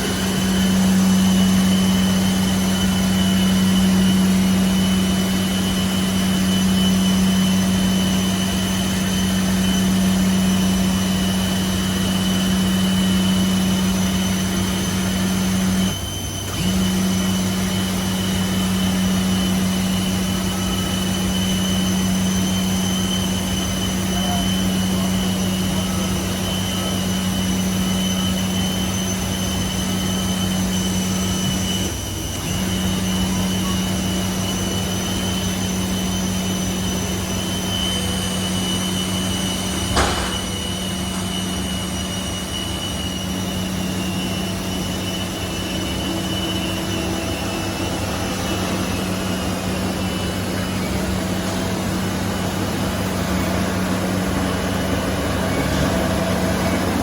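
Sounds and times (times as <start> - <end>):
aircraft machinery hum and whine: 0.0 - 57.0
sharp knock: 39.9 - 40.7.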